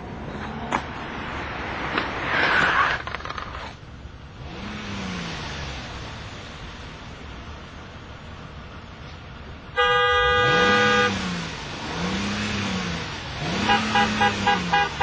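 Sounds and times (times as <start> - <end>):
car noise: 0.0 - 15.0
car horn blast: 9.8 - 11.3, 13.5 - 15.0.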